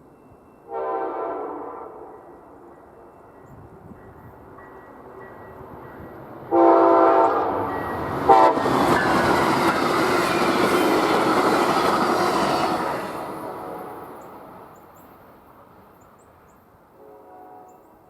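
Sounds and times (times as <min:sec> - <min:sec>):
train passing over rails: 0:00.0 - 0:17.1
locomotive air horn blasts: 0:00.7 - 0:02.1, 0:06.5 - 0:07.7, 0:08.3 - 0:09.0, 0:12.6 - 0:14.3, 0:17.0 - 0:17.9.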